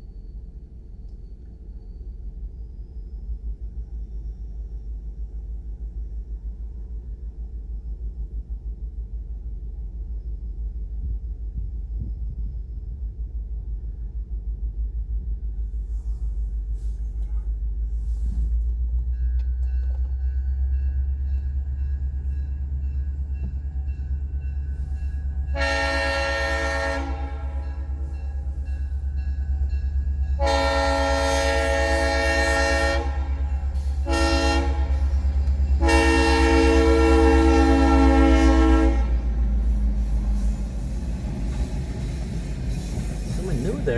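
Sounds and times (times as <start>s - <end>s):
train rumble: 0.0s - 43.9s
locomotive air horn blasts: 25.5s - 28.2s, 30.4s - 39.5s.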